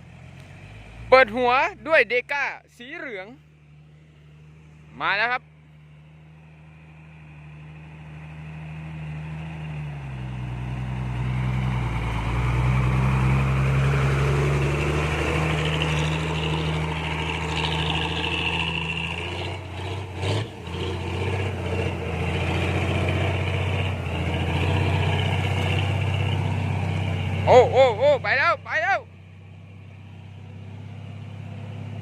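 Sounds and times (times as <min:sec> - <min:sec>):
truck diesel engine: 0:00.0 - 0:32.0.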